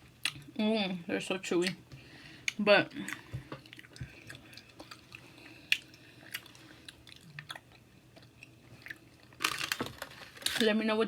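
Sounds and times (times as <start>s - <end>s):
mouth chewing wetly: 2.5s - 9.1s.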